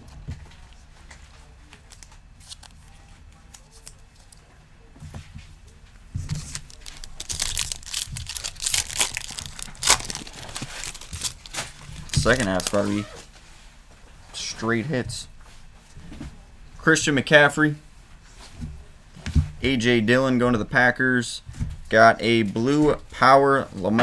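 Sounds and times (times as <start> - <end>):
faint handling of cards: 0.4 - 14.0
card pack wrapper tearing and crinkling: 1.9 - 2.8, 6.2 - 13.2.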